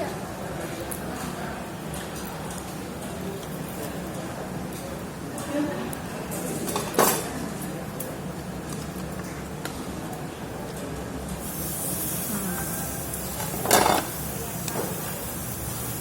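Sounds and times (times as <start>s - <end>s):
faint background chatter: 0.0s - 16.0s
tableware clinks: 6.6s - 7.4s, 13.4s - 14.1s
meat sizzling on grill: 11.4s - 16.0s.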